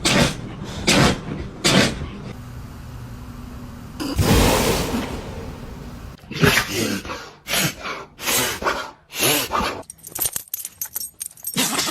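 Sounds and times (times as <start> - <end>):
dog sneezing: 0.0 - 2.0.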